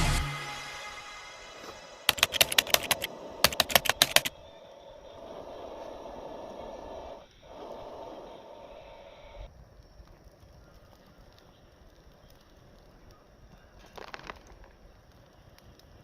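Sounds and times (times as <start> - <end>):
steady hiss: 0.0 - 16.0
sharp clicking taps: 2.1 - 4.3.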